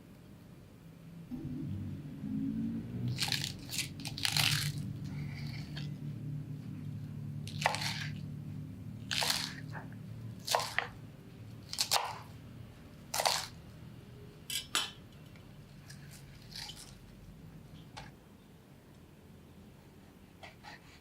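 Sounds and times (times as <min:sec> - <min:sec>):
knife cutting crisp vegetables: 0:03.1 - 0:05.9, 0:07.4 - 0:08.2, 0:09.0 - 0:11.0, 0:11.6 - 0:12.4, 0:13.1 - 0:13.6, 0:15.8 - 0:17.0.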